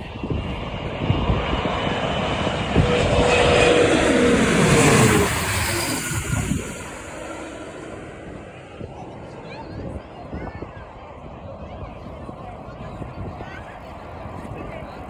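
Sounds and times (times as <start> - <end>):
jet engines passing: 0.0 - 15.0
wind buffeting microphone: 0.0 - 15.0.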